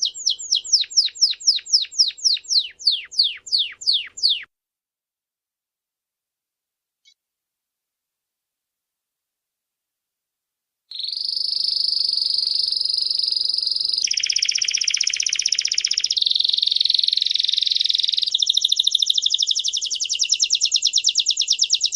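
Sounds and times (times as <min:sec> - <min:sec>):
canary singing trills: 0:00.0 - 0:04.5, 0:10.9 - 0:21.9.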